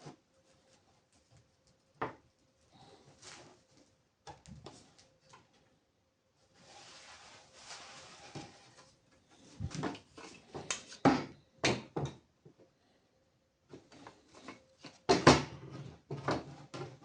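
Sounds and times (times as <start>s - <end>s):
object sliding scrape: 6.6s - 8.8s
objects knocking and clattering: 9.6s - 12.3s, 13.8s - 17.0s.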